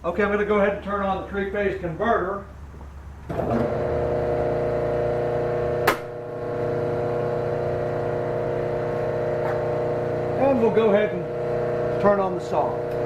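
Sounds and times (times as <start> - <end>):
converter humming: 1.8 - 13.0
sharp click: 5.9 - 6.1.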